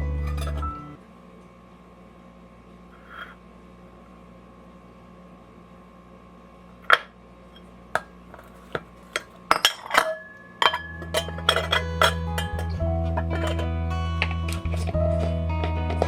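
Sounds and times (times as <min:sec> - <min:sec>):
soft guitar music: 0:00.0 - 0:01.0, 0:11.2 - 0:16.0
dishes and cutlery clinking: 0:00.2 - 0:00.8, 0:08.4 - 0:13.8.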